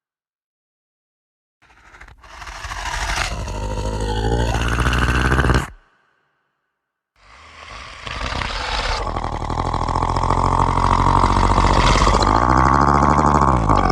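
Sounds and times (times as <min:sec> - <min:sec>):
deep buzzing drone: 0:08.6 - 0:13.9.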